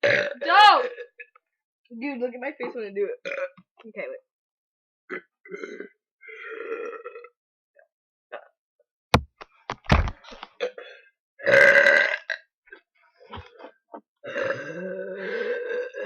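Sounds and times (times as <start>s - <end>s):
person burping loudly: 0.0s - 1.3s, 3.2s - 3.6s, 5.1s - 7.4s, 10.6s - 12.5s, 14.2s - 16.0s
sharp thumps: 9.2s - 10.5s.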